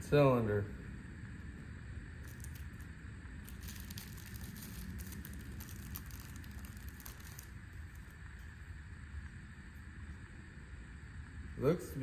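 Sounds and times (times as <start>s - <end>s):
low background rumble: 0.0s - 12.0s
packaging crinkling and rustling: 2.2s - 8.5s
small clicks and crackles: 2.2s - 8.6s.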